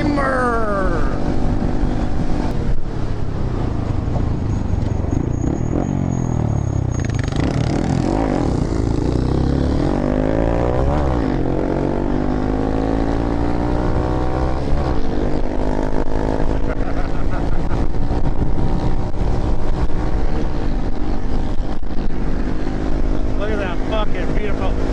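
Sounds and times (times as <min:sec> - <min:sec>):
road and wind rumble: 0:00.0 - 0:24.9
motorcycle engine revving: 0:05.0 - 0:24.9.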